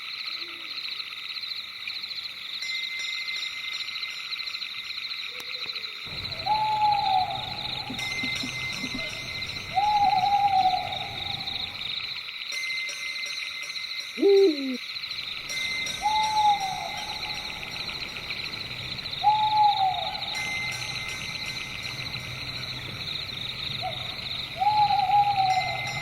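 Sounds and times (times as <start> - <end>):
night insects chorus: 0.0 - 26.0
owl hooting: 6.1 - 12.1, 14.2 - 14.8, 15.4 - 26.0.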